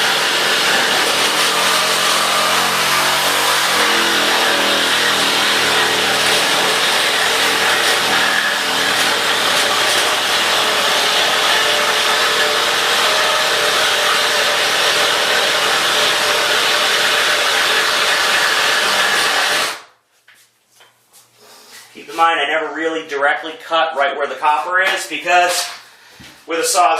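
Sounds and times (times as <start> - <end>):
reciprocating saw cutting: 0.0 - 19.8.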